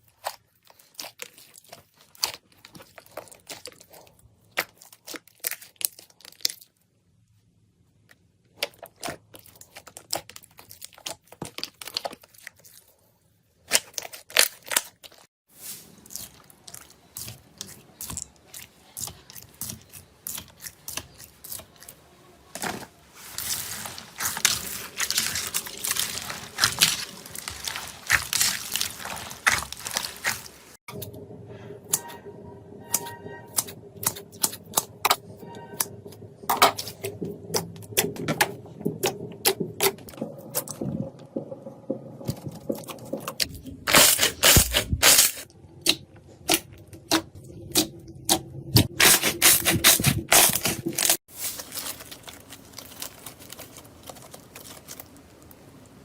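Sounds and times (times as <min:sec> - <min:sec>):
slime crackling and popping: 0:00.1 - 0:06.8, 0:23.2 - 0:30.8, 0:42.3 - 0:56.0.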